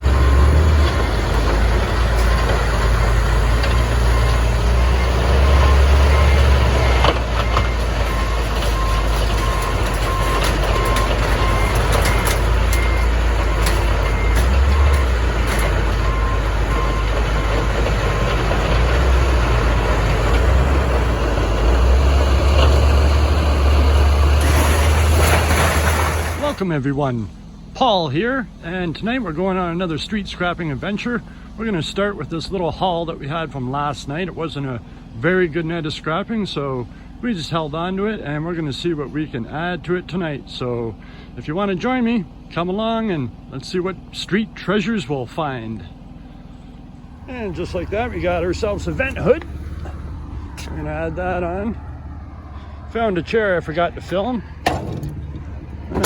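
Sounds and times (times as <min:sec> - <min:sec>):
diesel engine rumbling: 0:00.0 - 0:56.0
backup alarm beeping: 0:00.1 - 0:20.1
metal clanks: 0:54.0 - 0:56.0.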